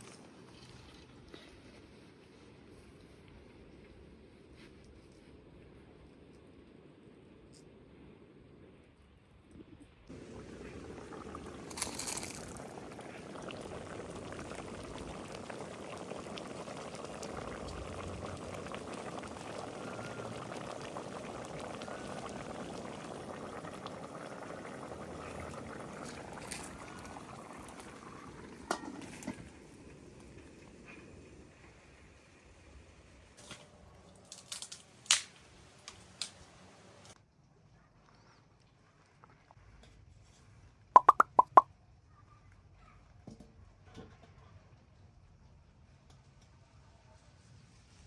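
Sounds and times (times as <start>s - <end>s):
pot bubbling at a boil: 7.9s - 33.6s, 41.0s - 41.6s.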